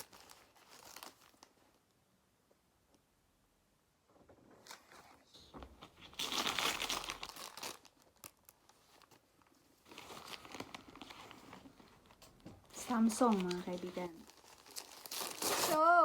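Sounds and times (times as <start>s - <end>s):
gift wrapping tearing and crinkling: 0.0s - 1.6s, 5.8s - 16.0s.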